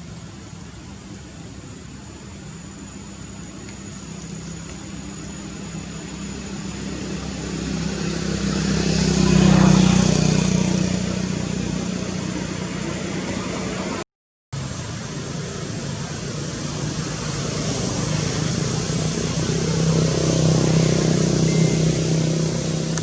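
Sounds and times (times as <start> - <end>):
vehicle engine passing by: 6.6 - 14.0, 14.6 - 23.0.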